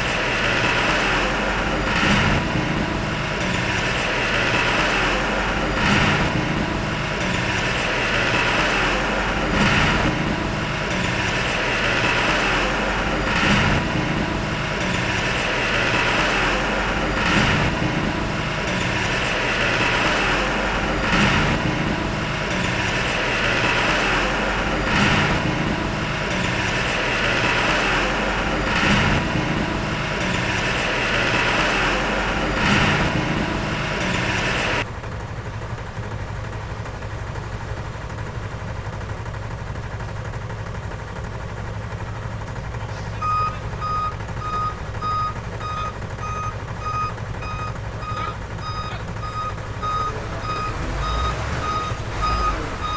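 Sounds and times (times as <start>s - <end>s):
machinery surge and clank: 0.0s - 34.8s
diesel machinery running: 0.0s - 52.9s.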